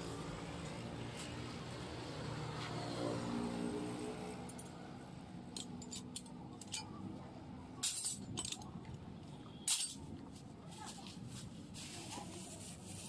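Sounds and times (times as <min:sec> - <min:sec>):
metal tools clinking: 0:05.5 - 0:07.0, 0:09.6 - 0:10.1.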